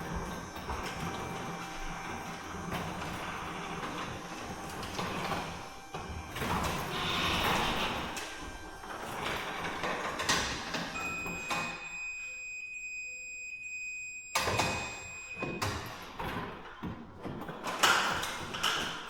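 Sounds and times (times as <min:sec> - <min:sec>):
garage door rollers knocking and scraping: 0:00.0 - 0:11.7, 0:15.4 - 0:19.0.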